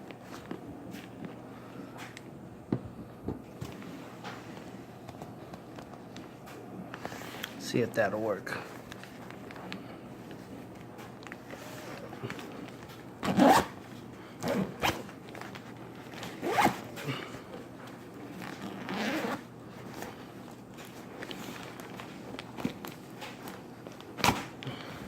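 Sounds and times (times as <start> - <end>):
zipper rasping: 13.2 - 13.8, 16.4 - 16.8, 18.4 - 19.5.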